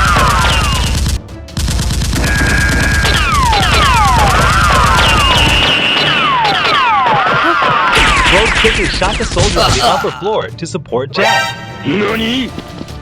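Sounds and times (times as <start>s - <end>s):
automatic gunfire sound effects: 0.0s - 9.0s
background music: 0.0s - 13.0s.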